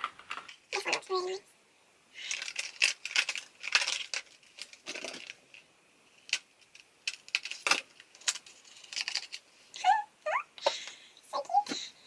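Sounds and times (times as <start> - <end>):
packaging rustling and clattering: 2.2 - 9.5.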